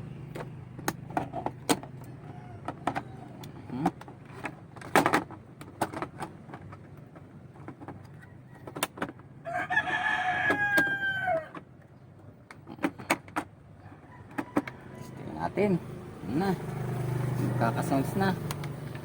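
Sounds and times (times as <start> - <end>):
sharp clicks and knocks: 0.2 - 9.2
rooster crowing: 2.1 - 3.4, 9.4 - 11.6, 13.8 - 15.2.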